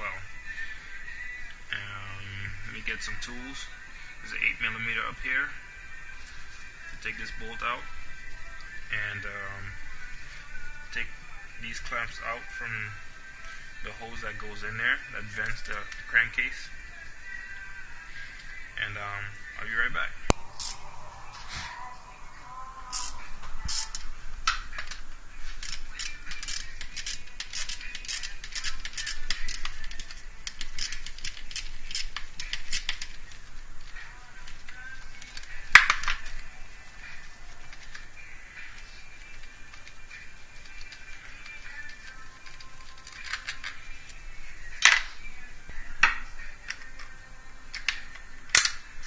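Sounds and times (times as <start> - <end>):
hand tools clicking and clacking: 25.6 - 33.2.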